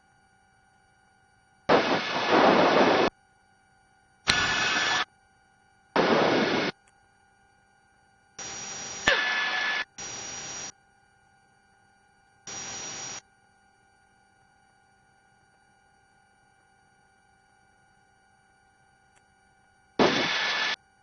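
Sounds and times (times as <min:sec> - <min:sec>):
static hiss bursts: 0:01.7 - 0:03.1, 0:04.3 - 0:05.1, 0:06.0 - 0:06.7, 0:08.4 - 0:10.7, 0:12.5 - 0:13.2, 0:20.0 - 0:20.8.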